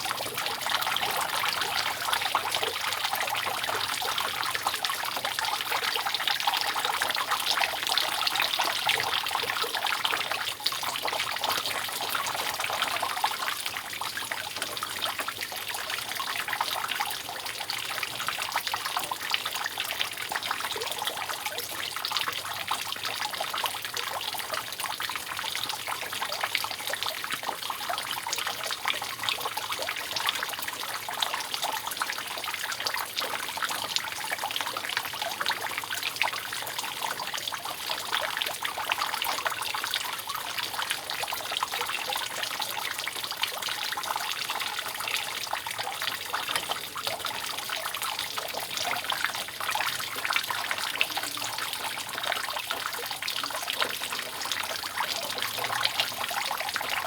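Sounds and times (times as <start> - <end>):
rainwater dripping and trickling: 0.0 - 57.0.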